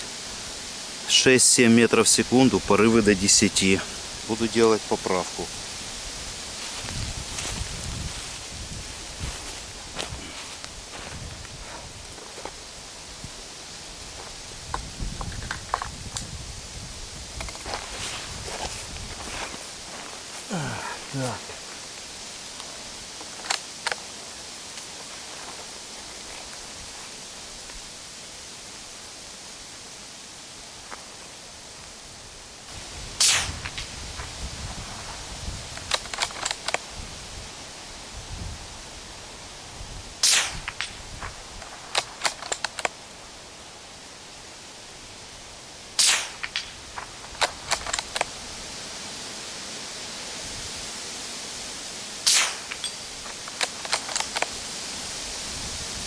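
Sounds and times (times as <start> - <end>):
strong wind hiss: 0.0 - 56.0
wind gusts rumbling on microphone: 1.9 - 23.3, 32.1 - 42.5, 45.0 - 56.0
suppressed rifle shots: 33.2 - 33.9, 40.2 - 41.0, 46.0 - 46.8, 52.2 - 53.0.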